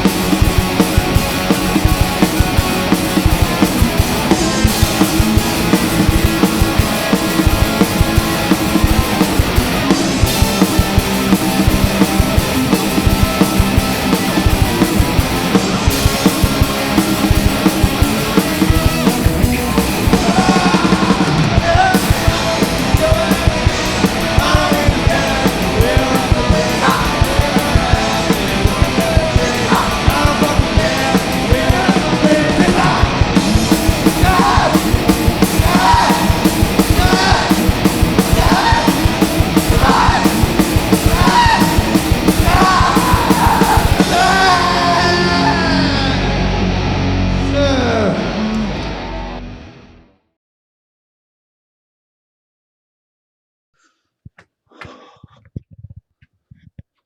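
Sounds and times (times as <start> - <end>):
punk rock band playing: 0.0 - 49.8
person singing: 18.3 - 46.6.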